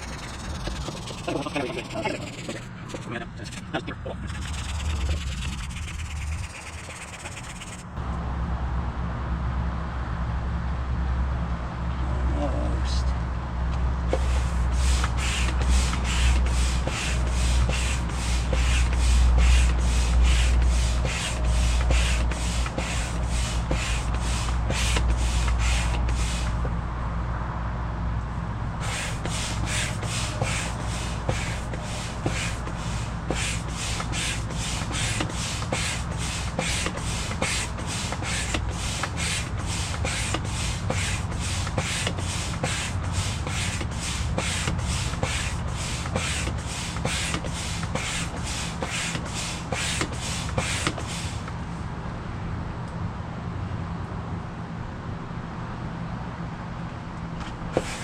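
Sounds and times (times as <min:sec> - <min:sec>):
manual air pump strokes: 0:00.0 - 0:08.0, 0:14.1 - 0:26.8, 0:28.8 - 0:51.6, 0:57.4 - 0:58.0.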